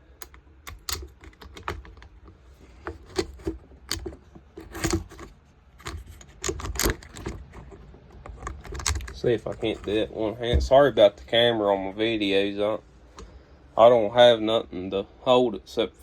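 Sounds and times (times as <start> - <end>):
small metal parts clicking: 0.0 - 10.0
tool being handled: 0.0 - 10.8.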